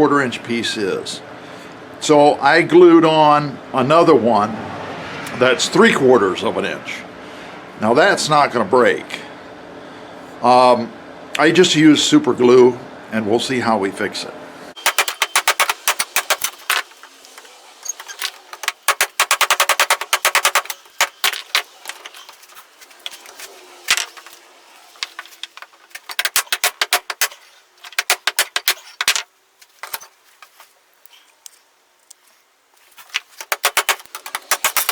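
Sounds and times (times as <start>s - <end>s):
rapid sharp clicks and rattling: 14.8s - 30.1s, 33.0s - 34.9s.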